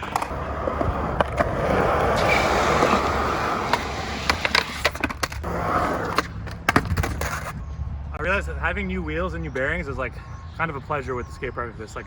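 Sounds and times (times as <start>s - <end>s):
skateboard wheels rolling on concrete: 0.0s - 9.0s.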